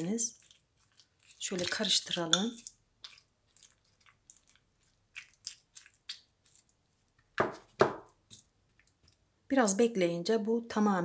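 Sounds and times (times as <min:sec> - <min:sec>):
wet crunches and squelches in jar: 0:00.0 - 0:07.4.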